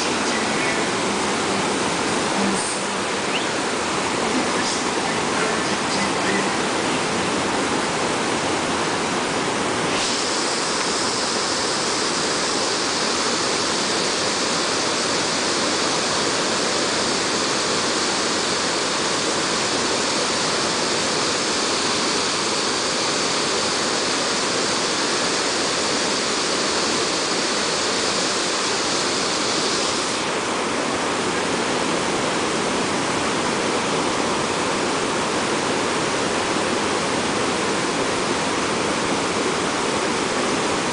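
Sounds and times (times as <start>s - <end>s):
waterfall rushing water: 0.0s - 40.9s
sharp hiss: 9.8s - 18.6s.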